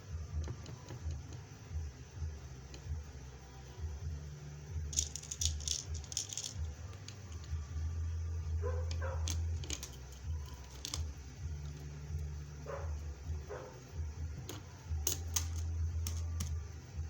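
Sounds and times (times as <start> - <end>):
low hum: 0.0 - 17.0
rivet machine clicking: 4.9 - 7.6, 14.4 - 16.6.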